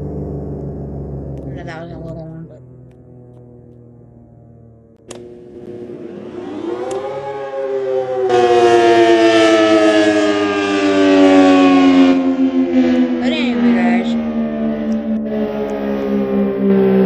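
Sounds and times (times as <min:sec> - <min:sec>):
siren steady tone: 0:00.0 - 0:17.0
sharp click: 0:05.0 - 0:05.4.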